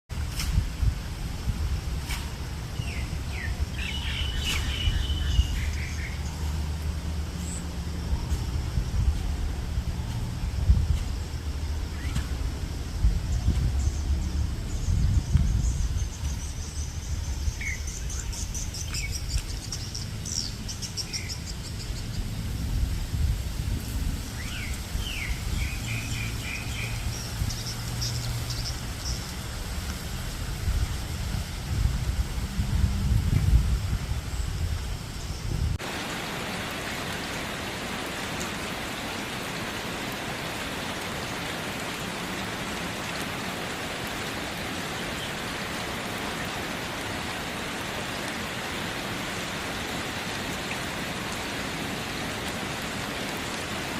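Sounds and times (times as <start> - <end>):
wind rumble on microphone: 0.1 - 53.9
birds chirping: 2.8 - 6.6, 13.3 - 22.4, 24.4 - 29.6.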